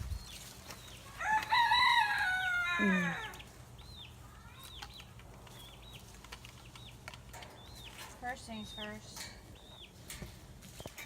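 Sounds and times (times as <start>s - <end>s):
rooster crowing: 1.2s - 3.4s.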